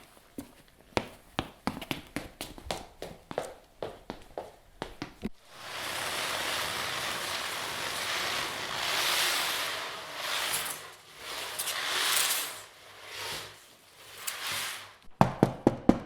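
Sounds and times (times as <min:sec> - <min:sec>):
rushing hiss like surf: 0:05.4 - 0:15.0.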